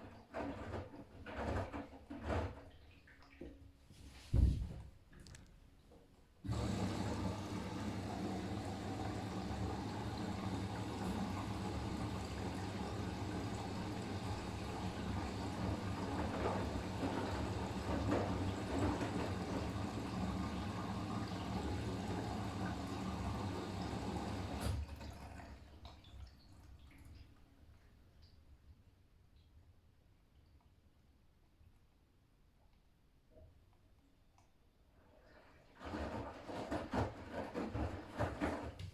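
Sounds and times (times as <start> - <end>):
washing machine filling with water: 0.0 - 4.5, 6.4 - 28.0, 35.0 - 38.9
water trickling: 6.7 - 28.5.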